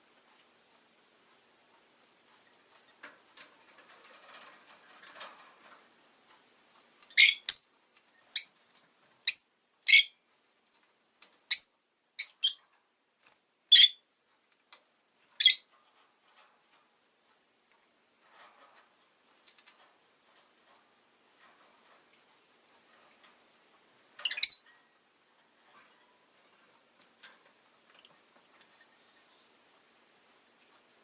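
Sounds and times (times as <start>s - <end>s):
faint rustling: 0.0s - 7.1s, 12.6s - 31.0s
lovebird high-pitched chirps: 7.1s - 8.6s, 9.2s - 10.2s, 11.5s - 12.6s, 13.7s - 14.0s, 15.4s - 15.7s, 24.2s - 24.7s.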